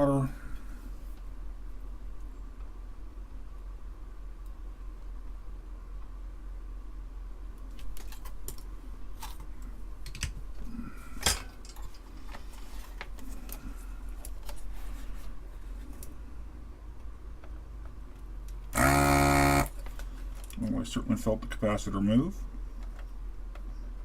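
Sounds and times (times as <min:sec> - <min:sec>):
low steady hum: 0:00.0 - 0:24.0
loud electric buzz: 0:18.7 - 0:19.8.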